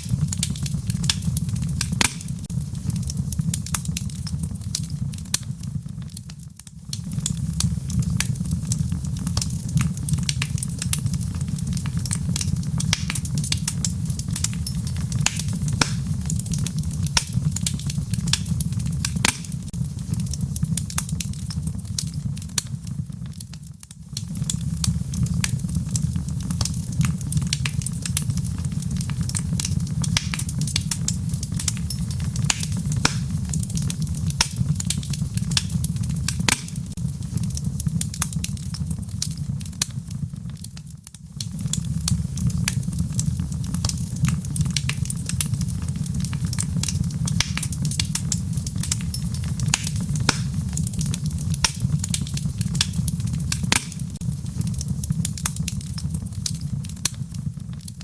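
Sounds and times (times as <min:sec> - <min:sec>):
fire low rumble: 0:00.0 - 0:58.0
wood fire crackling: 0:00.0 - 0:58.0.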